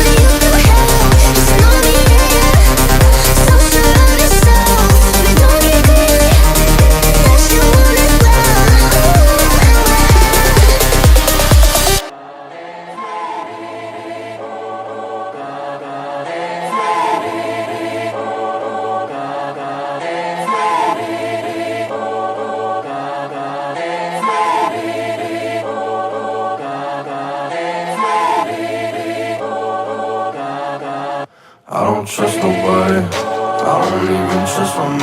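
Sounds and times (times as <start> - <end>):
low bass line: 0.0 - 12.0
choir-like vocal pads: 0.0 - 35.0.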